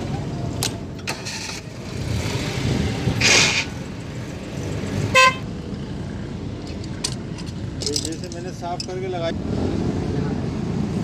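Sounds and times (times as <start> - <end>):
street background rumble: 0.0 - 11.0
vehicle horn toot: 5.1 - 5.4.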